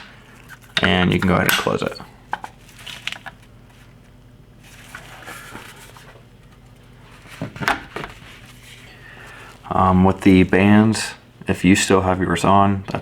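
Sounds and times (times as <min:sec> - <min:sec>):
faint steady hum: 0:00.0 - 0:13.0.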